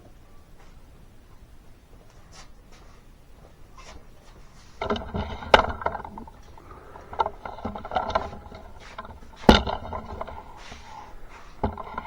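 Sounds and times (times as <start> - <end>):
hard objects rattling and clattering: 4.6 - 12.0
sharp knocks: 4.8 - 12.0.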